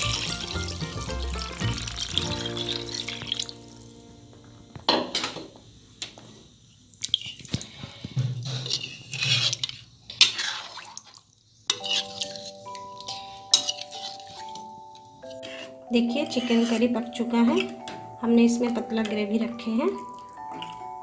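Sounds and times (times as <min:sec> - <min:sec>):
gravy sloshing: 0:00.0 - 0:04.0, 0:07.0 - 0:14.6
gentle background music: 0:00.0 - 0:05.2, 0:11.7 - 0:21.0
spoon clinking against pot: 0:11.7 - 0:14.6.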